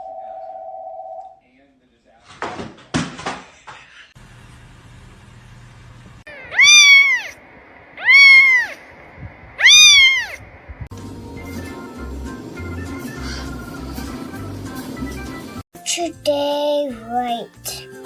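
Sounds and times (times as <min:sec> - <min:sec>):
cat meowing: 0:06.3 - 0:07.4, 0:08.0 - 0:08.8, 0:09.6 - 0:10.4.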